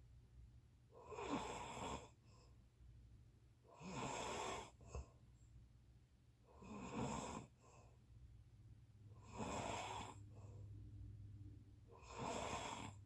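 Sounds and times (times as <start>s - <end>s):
person snoring: 9.2s - 10.2s, 12.0s - 13.0s.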